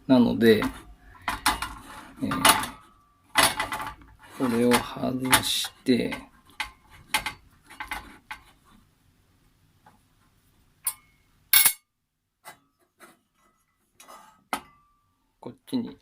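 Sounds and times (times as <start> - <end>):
metal clinks and knocks: 0.6 - 8.5.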